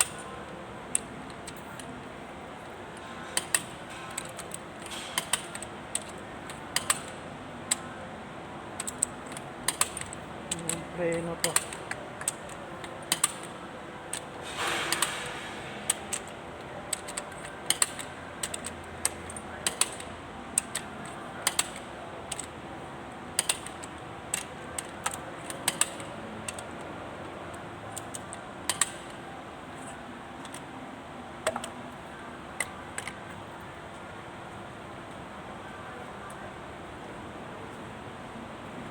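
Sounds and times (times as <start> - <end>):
hand tools clicking on metal: 3.0 - 7.8, 8.8 - 15.2, 15.9 - 22.6, 23.4 - 26.9, 27.5 - 29.2.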